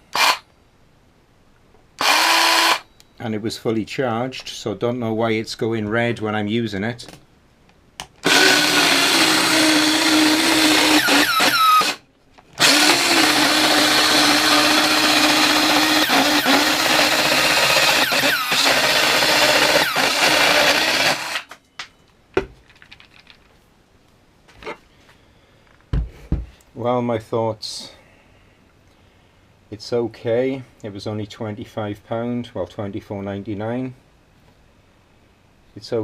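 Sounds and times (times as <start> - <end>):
circular saw cutting: 0.1 - 0.4, 2.0 - 2.8, 8.2 - 12.0, 12.6 - 21.5.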